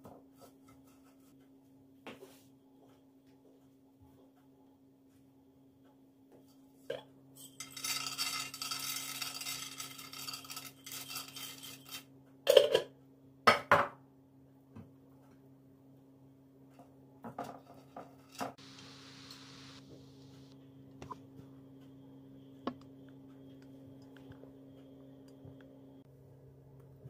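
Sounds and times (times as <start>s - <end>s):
dishes rattling and scraping: 6.9s - 12.9s
short hiss: 18.6s - 20.5s
low hum: 18.6s - 27.0s.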